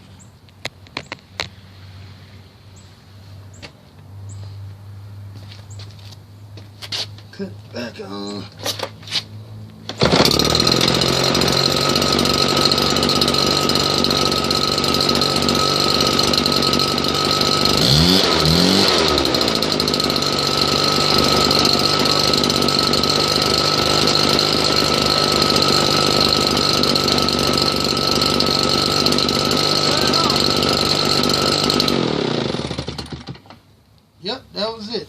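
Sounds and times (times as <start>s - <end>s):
leaf blower engine revving: 9.8s - 33.6s.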